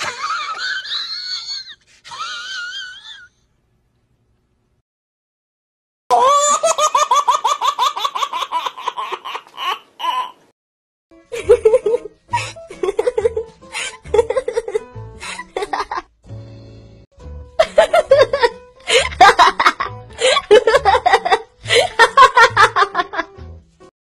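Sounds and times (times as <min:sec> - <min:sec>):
young woman laughing: 0:00.0 - 0:03.3, 0:11.3 - 0:16.1, 0:17.6 - 0:23.3
baby giggling: 0:06.1 - 0:10.4.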